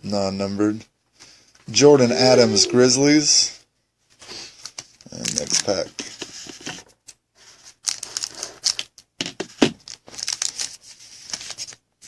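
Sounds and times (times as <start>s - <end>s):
card pack wrapper tearing: 5.1s - 5.7s, 7.8s - 9.0s, 9.8s - 11.8s.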